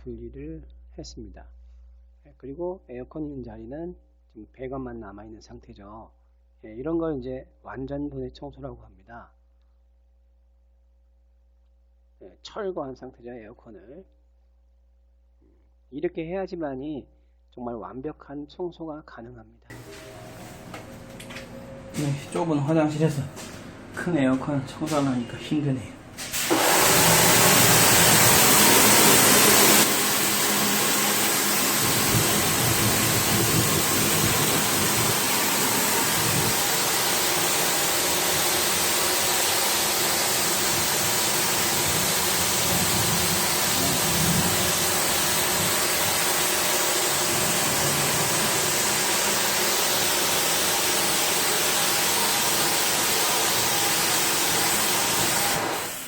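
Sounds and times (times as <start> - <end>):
motor hum: 19.7 - 56.0
high-pressure water spray hissing: 26.2 - 56.0.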